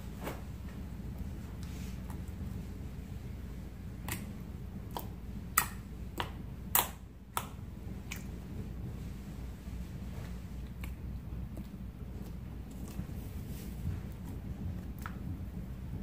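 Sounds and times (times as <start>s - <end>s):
steady low hum: 0.0s - 16.0s
slime wet clicks and pops: 4.0s - 4.3s, 4.9s - 8.3s.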